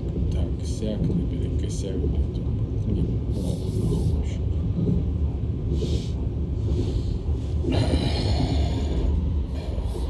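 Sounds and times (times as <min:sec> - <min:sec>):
train rumble inside carriage: 0:00.0 - 0:10.0
noisy breath close to microphone: 0:03.2 - 0:04.5, 0:05.6 - 0:10.0.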